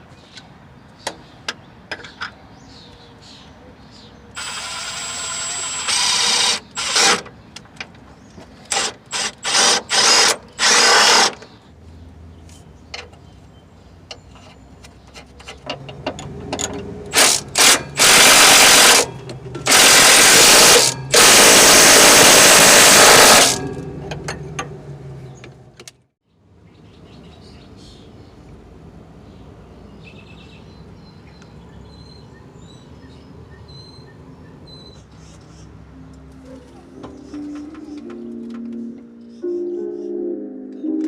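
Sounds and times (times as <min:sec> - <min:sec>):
power tool running in bursts: 0:17.1 - 0:19.1, 0:19.7 - 0:23.7.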